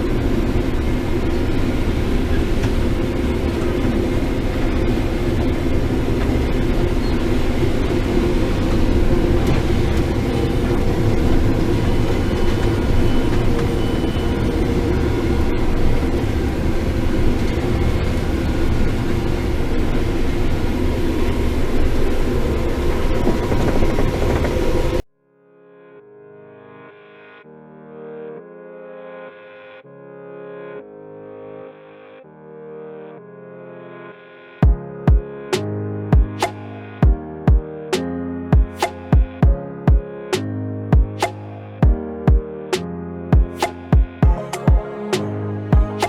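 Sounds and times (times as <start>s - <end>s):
combine harvester engine drone: 0.0s - 25.0s.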